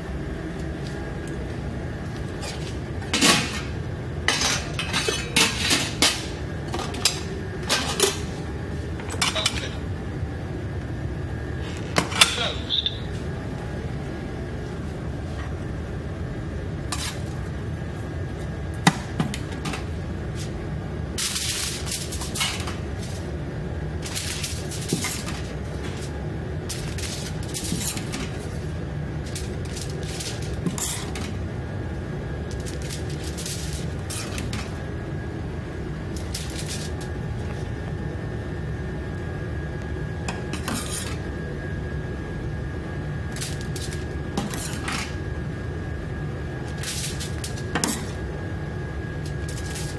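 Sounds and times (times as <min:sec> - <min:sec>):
steady low hum: 0:00.0 - 0:49.9
dishes and utensils clinking: 0:02.4 - 0:08.4, 0:09.0 - 0:09.8, 0:12.0 - 0:13.2.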